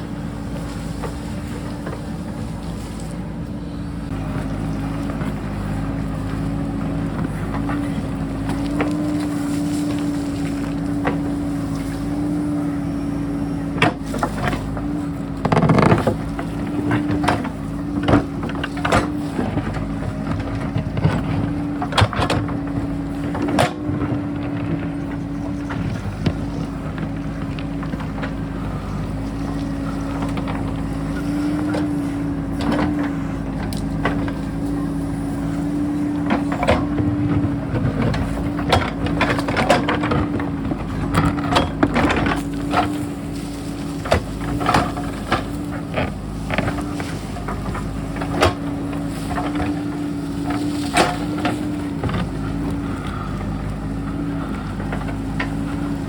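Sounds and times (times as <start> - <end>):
diesel engine running: 0.0 - 56.0
bucket knocking and scraping rock: 13.8 - 29.1.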